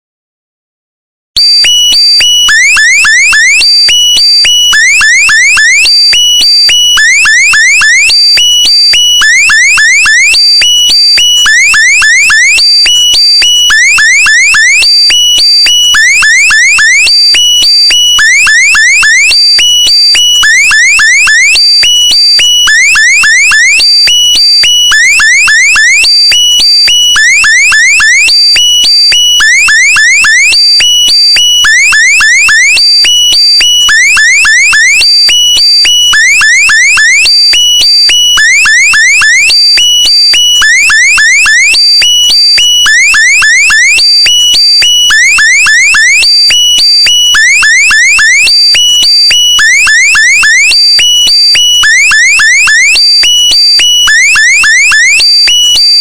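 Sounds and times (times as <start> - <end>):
electronic alarm chirps: 1.4 - 56.0.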